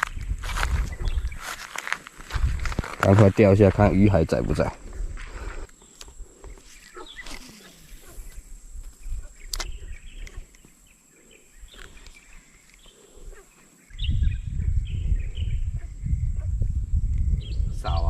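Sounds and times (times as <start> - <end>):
wind rumbling on microphone: 0.0 - 10.7, 11.4 - 18.0
steady high-pitched whine: 3.3 - 14.4
faint bird chirps: 5.8 - 16.6.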